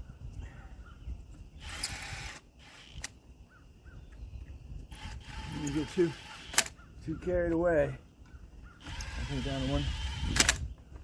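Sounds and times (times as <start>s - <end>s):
bird calling: 2.6s - 11.0s
sharp click: 6.4s - 6.8s, 10.3s - 10.6s.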